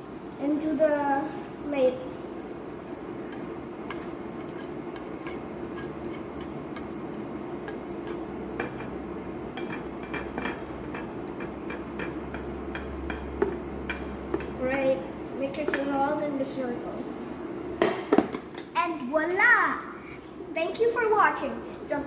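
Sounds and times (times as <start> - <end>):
steady low hum: 0.0 - 22.0
utensil scraping frying pan: 2.4 - 16.0.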